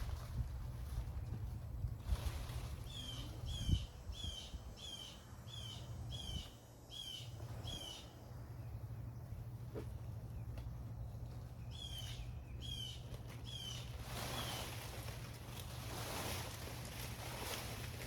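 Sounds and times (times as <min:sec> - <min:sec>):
songbird down-slurred call: 0:02.8 - 0:10.6, 0:11.5 - 0:14.8.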